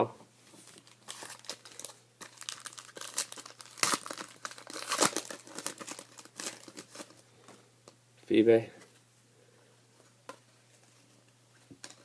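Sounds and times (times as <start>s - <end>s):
plastic packaging crinkling: 0.6s - 7.2s.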